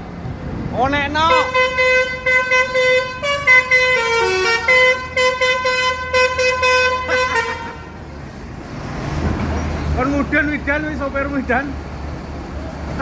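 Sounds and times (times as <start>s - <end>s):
musical bus air horn: 1.3s - 8.0s.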